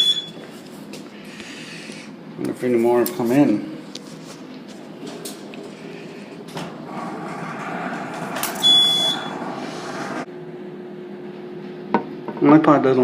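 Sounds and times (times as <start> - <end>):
fire alarm panel beep: 0.0 - 0.4, 8.6 - 9.3
rushing noise: 6.7 - 10.3.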